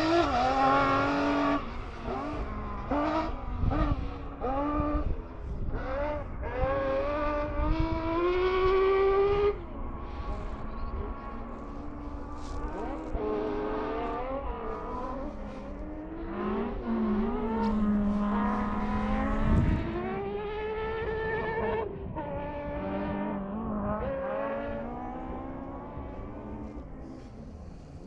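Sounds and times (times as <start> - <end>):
rally car engine revving: 0.0 - 28.0
tyre and road noise: 0.0 - 28.0.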